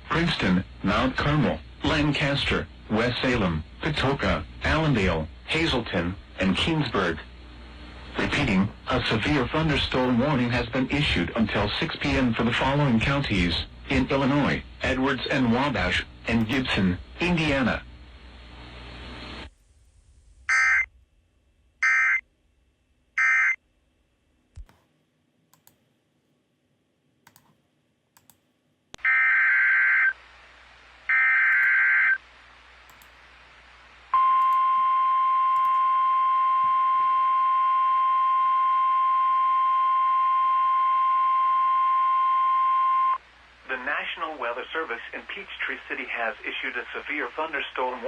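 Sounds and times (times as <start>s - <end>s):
steady single-pitch warning tone: 34.2s - 43.2s.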